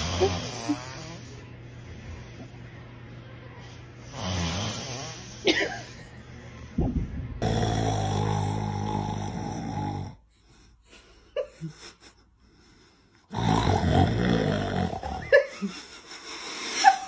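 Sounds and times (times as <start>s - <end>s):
man snoring: 0.0s - 1.4s, 4.1s - 5.5s, 7.4s - 10.3s, 13.2s - 15.5s.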